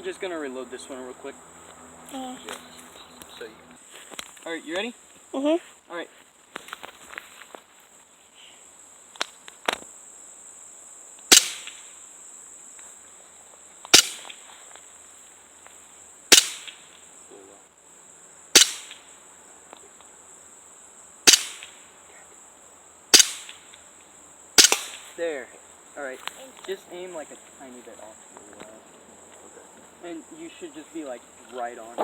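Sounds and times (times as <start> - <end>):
high insect buzz: 0.0 - 32.0
pistol shots: 11.3 - 11.9, 14.0 - 14.4, 16.3 - 16.8, 18.6 - 19.1, 21.3 - 21.8, 23.1 - 23.6, 24.6 - 25.1.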